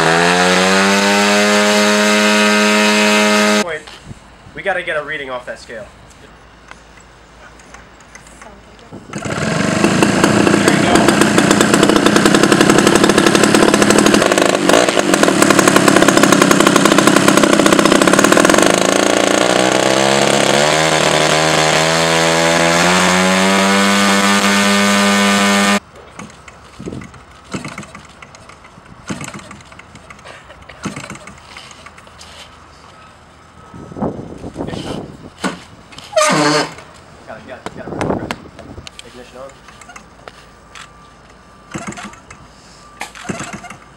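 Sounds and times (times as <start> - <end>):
small aircraft engine running: 0.0 - 3.6, 9.1 - 32.0.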